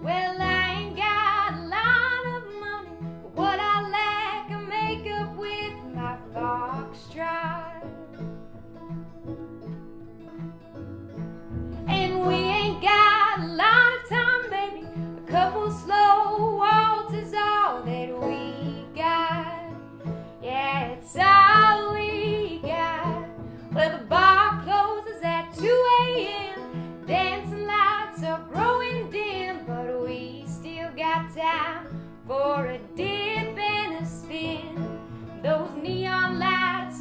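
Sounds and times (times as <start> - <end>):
strummed acoustic guitar: 0.0 - 37.0
person singing: 11.9 - 19.8, 20.4 - 34.8.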